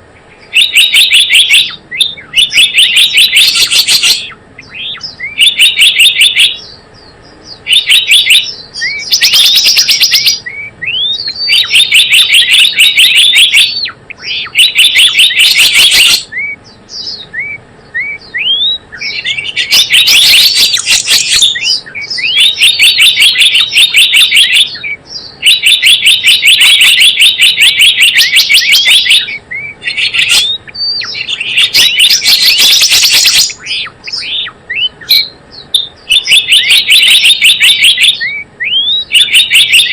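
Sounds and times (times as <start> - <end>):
bird chattering trills: 0.0 - 39.9
rising bird chirps: 0.0 - 39.9.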